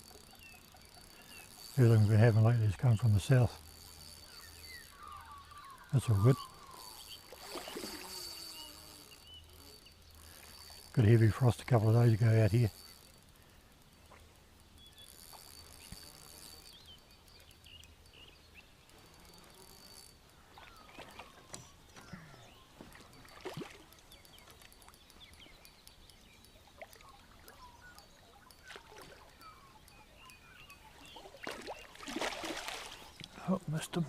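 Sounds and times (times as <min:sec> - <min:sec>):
bird chirps and warbles: 0:00.0 - 0:13.5, 0:14.6 - 0:34.0
high insect-like hiss: 0:00.0 - 0:33.4.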